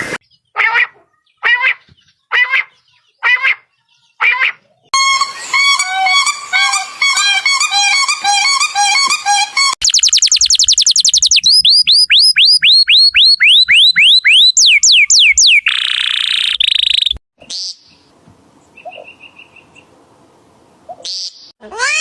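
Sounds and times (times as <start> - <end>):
harsh buzzy bird call: 0.6 - 17.9
bird whistled chirps: 9.8 - 17.6.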